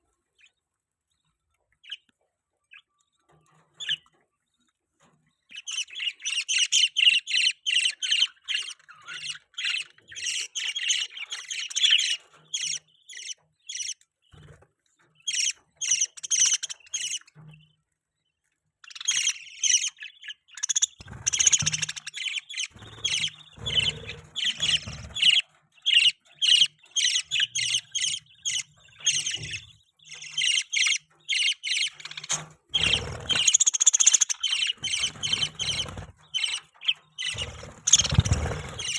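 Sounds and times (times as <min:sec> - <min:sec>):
budgies chirping and chattering: 0:01.2 - 0:17.9, 0:18.8 - 0:38.9.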